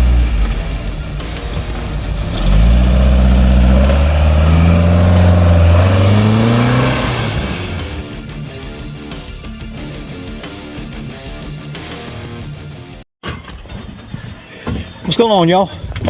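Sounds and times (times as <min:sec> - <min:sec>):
car engine revving: 0:00.0 - 0:08.8.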